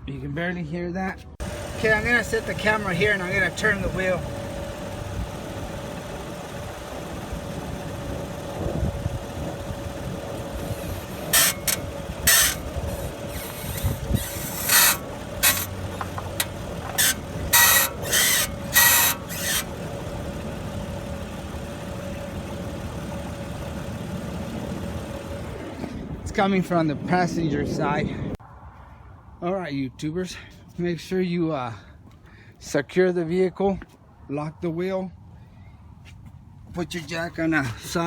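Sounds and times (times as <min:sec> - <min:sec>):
scratchy suspension squeaks: 0:01.4 - 0:25.6
car engine idling: 0:01.4 - 0:26.2.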